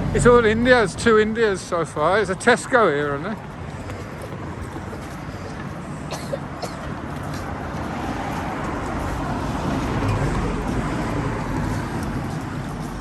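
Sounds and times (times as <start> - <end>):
vehicle passing: 0.0 - 13.0.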